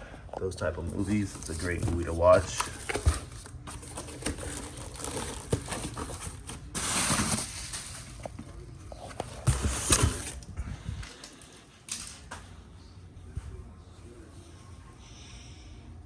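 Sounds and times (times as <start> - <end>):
packaging rustling: 0.8 - 10.4.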